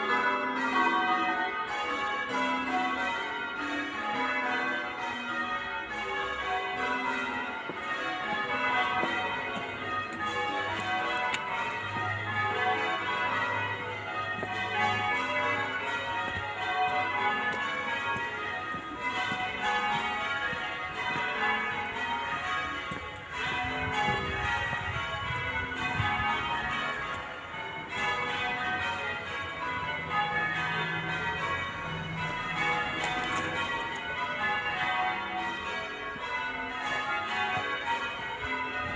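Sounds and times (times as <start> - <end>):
church bells ringing changes: 0.0 - 38.9.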